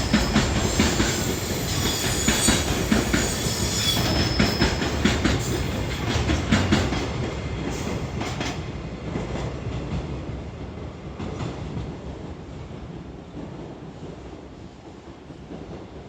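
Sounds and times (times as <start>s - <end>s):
train wheels clattering over rail joints: 0.0s - 10.0s
train rumble: 0.0s - 16.0s.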